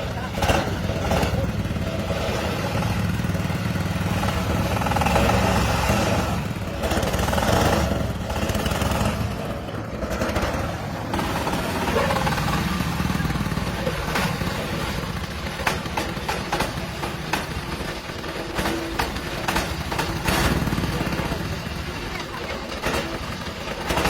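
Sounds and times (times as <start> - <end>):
engine running with pulsing hum: 0.0 - 24.0.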